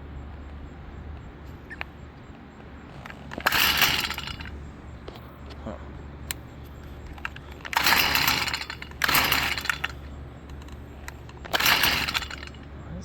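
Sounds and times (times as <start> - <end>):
small clicks: 0.2 - 5.6, 6.2 - 12.7
string trimmer engine cranking: 2.9 - 5.2, 6.2 - 12.8
recoil starter cord pulls: 2.9 - 5.3, 6.2 - 12.7.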